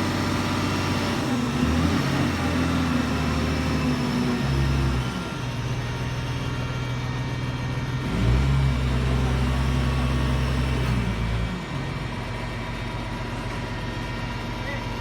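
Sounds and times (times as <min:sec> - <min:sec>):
large engine running: 0:00.0 - 0:15.0.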